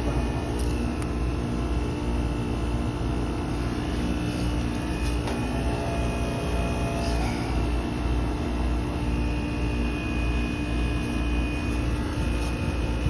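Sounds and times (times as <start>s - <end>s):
heat pump hum with high whine: 0.0s - 13.0s.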